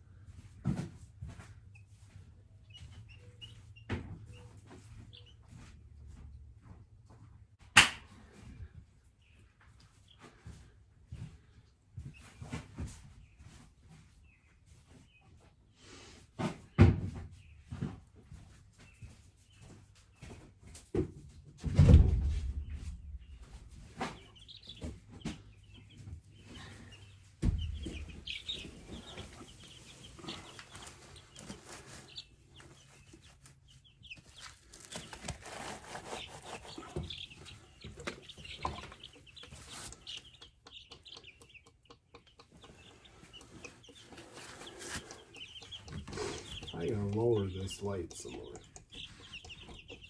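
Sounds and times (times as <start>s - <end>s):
chicks peeping: 0.0s - 7.4s, 8.1s - 50.0s
heavy thuds: 21.6s - 25.9s, 26.5s - 29.7s.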